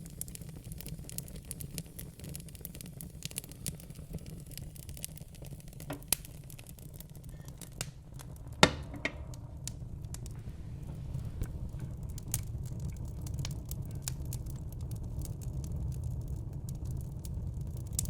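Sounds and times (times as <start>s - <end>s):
fire crackling and popping: 0.0s - 18.0s
rumble of flames: 0.0s - 18.0s
sharp loud pop: 8.6s - 9.4s.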